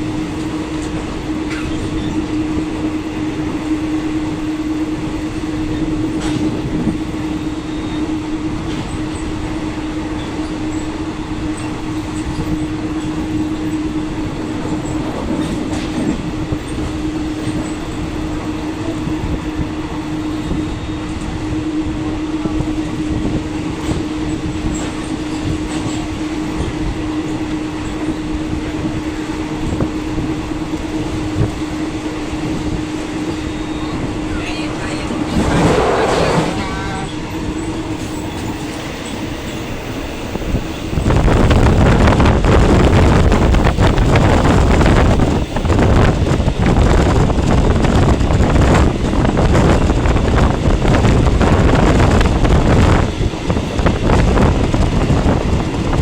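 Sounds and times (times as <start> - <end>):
train wheels rumbling on rail: 0.0 - 56.0
constant hum: 32.6 - 48.1.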